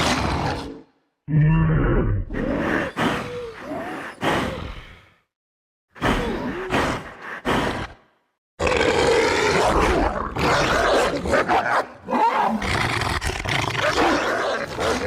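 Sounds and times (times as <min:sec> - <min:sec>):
werewolf roars and growls: 0:00.0 - 0:05.2, 0:08.6 - 0:15.0.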